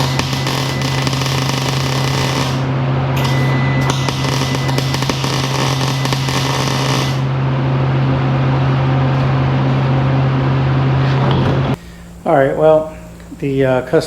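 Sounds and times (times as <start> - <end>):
arc welding crackling: 0.0 - 7.4
steady low hum: 0.0 - 14.0.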